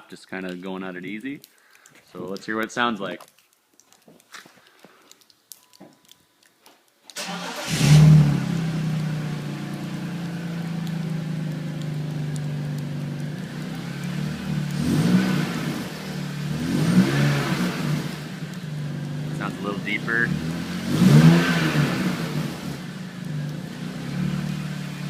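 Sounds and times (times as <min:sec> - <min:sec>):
car engine starting and idling: 0:07.2 - 0:25.0
engine revving: 0:07.2 - 0:25.0.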